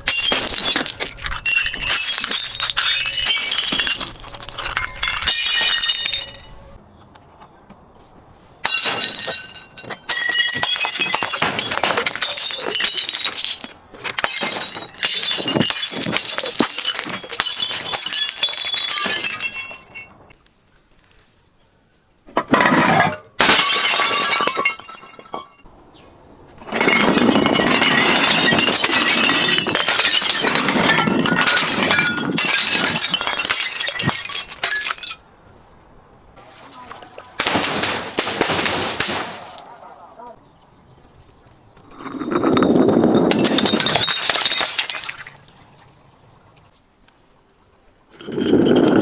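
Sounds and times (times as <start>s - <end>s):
glass bottles breaking and crushing: 0.0s - 6.7s, 8.6s - 20.3s, 22.4s - 25.7s, 26.6s - 35.3s, 37.4s - 39.6s, 41.9s - 45.7s.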